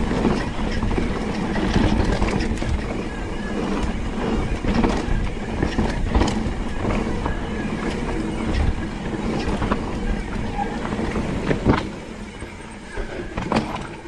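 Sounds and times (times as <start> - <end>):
bike knocking and rattling: 0.0 - 14.0
wind and tyre noise: 0.0 - 14.0.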